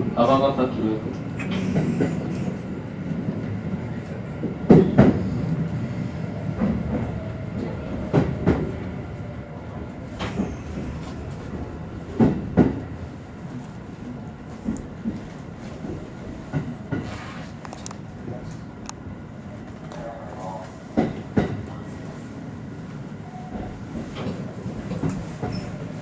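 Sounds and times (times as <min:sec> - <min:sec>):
train rumble from inside: 0:00.0 - 0:26.0.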